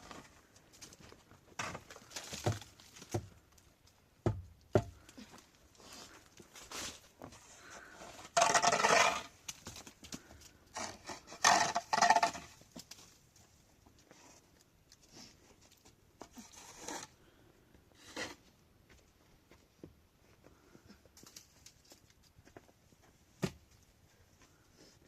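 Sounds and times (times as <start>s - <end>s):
scraping: 5.8s - 13.1s.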